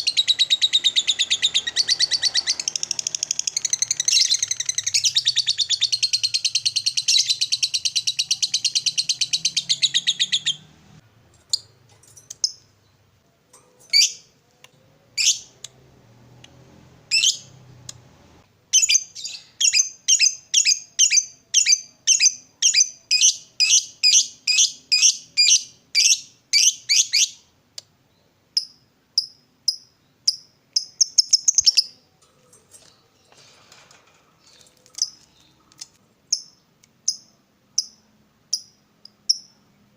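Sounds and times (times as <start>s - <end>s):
lovebird high chirps: 0.0s - 10.7s, 13.9s - 14.3s, 15.2s - 15.6s, 17.1s - 17.6s, 18.7s - 27.4s, 28.6s - 32.1s.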